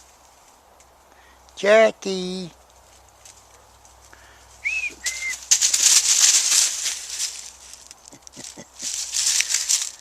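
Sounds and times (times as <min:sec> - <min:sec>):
dry rustling and crackling: 0:00.0 - 0:01.3, 0:02.3 - 0:10.0.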